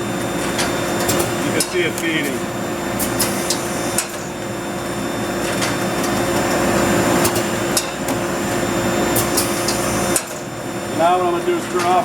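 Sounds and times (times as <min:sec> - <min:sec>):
dust collector air rush: 0:00.0 - 0:12.0
machine hum: 0:00.0 - 0:12.0.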